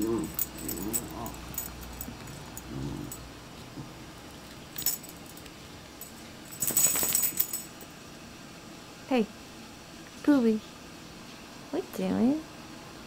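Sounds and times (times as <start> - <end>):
dog collar tags jingling: 0.0 - 3.2, 4.7 - 7.9
dog grunting: 0.0 - 4.0.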